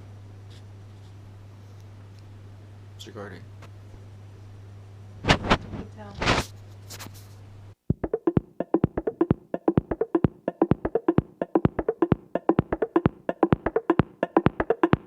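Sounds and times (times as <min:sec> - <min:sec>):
clicky percussive background music: 0:07.9 - 0:15.0.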